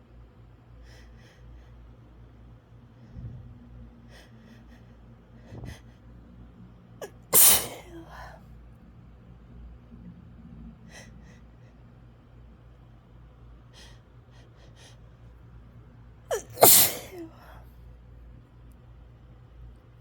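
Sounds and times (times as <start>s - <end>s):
woman sneezing: 7.0s - 8.3s, 16.3s - 17.6s.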